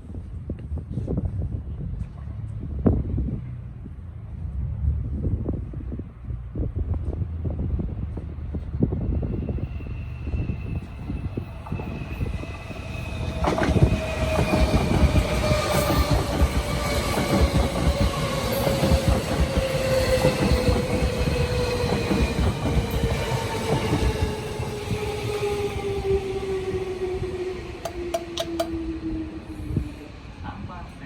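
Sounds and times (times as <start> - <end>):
train motor whine: 10.2 - 26.1, 27.8 - 29.9
train wheels clattering on rails: 11.6 - 25.1.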